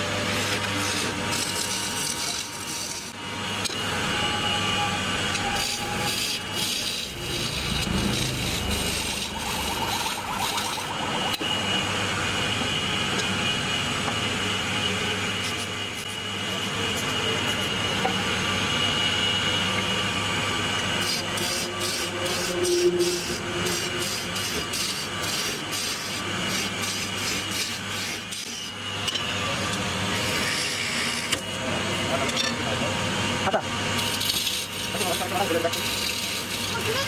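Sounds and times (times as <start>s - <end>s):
chisel scraping spinning wood: 0.0s - 11.8s, 20.8s - 29.3s, 33.9s - 37.0s
lathe motor hum: 0.0s - 37.0s.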